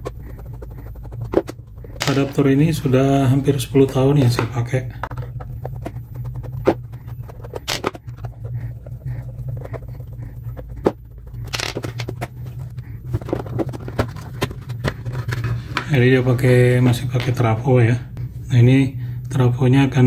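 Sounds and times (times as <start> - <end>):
plastic housing clicks and scrapes: 0.0 - 2.9, 3.9 - 15.9
steady low hum: 0.0 - 20.0.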